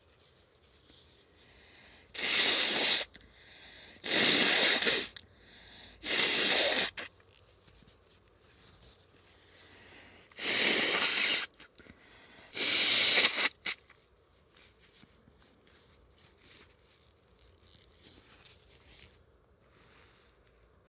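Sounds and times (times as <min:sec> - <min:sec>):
person blowing nose: 0:01.9 - 0:03.2, 0:03.8 - 0:05.2, 0:05.8 - 0:07.2, 0:10.2 - 0:11.8, 0:12.5 - 0:14.0.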